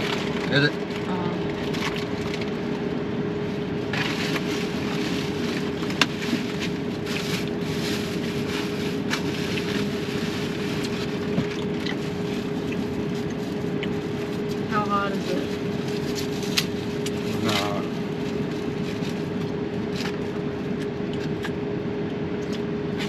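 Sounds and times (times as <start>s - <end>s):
vehicle cabin hum: 0.0s - 23.0s.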